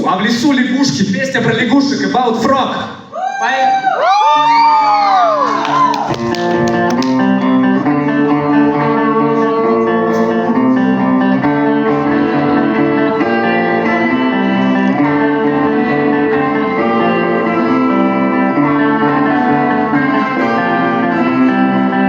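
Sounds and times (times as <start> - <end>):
funk band playing live: 6.1 - 22.0
guitar chords: 6.1 - 22.0.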